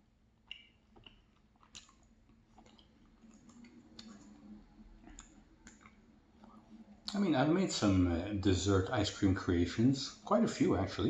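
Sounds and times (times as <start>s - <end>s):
close-up chewing with crunches: 0.4s - 6.0s.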